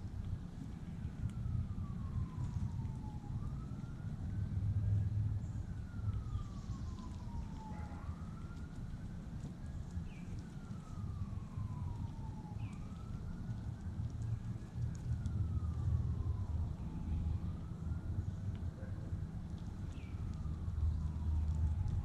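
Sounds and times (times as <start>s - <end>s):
emergency siren wailing: 0.0s - 22.0s
steady low rumble: 0.0s - 22.0s
short siren chirps: 5.3s - 8.7s.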